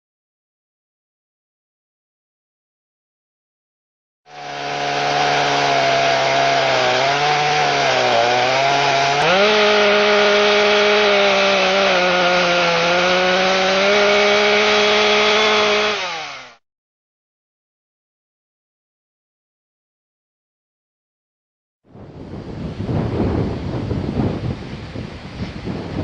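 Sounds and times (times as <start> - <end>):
chainsaw ripping a log: 4.3 - 16.6.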